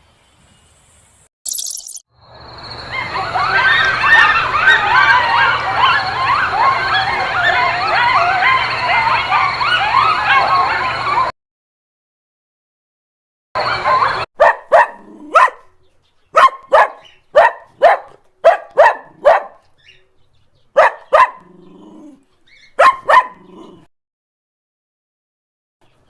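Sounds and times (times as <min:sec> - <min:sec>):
dog barking: 0:13.6 - 0:19.7, 0:20.7 - 0:21.8, 0:22.8 - 0:23.9.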